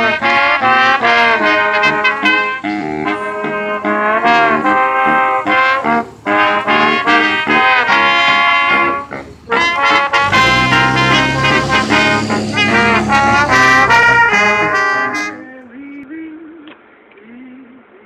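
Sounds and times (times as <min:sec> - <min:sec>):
heavy bass: 0:00.0 - 0:15.4
live band playing: 0:00.0 - 0:15.4
brass-like lead melody: 0:00.0 - 0:15.5.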